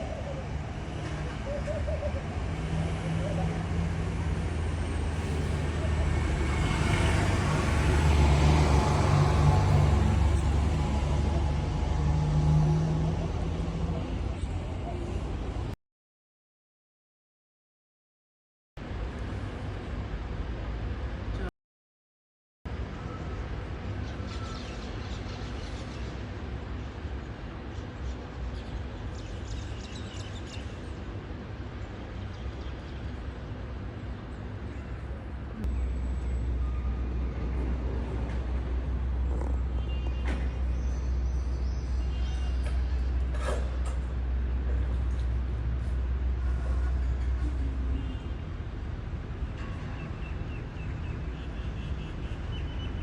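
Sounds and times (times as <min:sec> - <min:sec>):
bus engine hum: 0:00.0 - 0:15.8, 0:33.0 - 0:50.6
road noise: 0:00.0 - 0:15.8, 0:18.8 - 0:21.5, 0:22.7 - 0:53.0.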